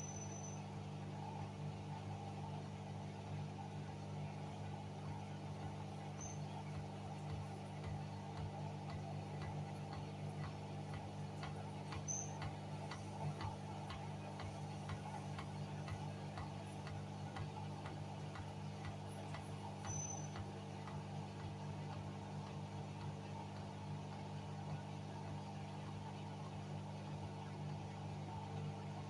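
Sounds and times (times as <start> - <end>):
washing machine humming: 0.0 - 29.0
light regular ticking: 5.6 - 24.8.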